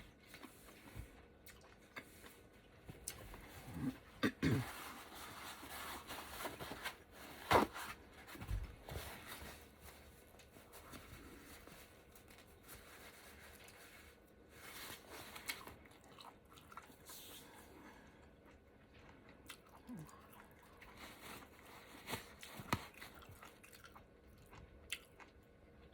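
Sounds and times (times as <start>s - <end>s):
close chewing of noodles: 0.0s - 4.2s, 15.4s - 25.9s.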